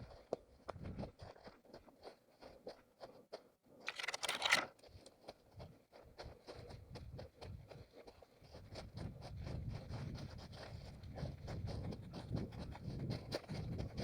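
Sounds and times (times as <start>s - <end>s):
running footsteps on forest ground: 0.0s - 14.0s
rustling undergrowth: 3.9s - 5.0s.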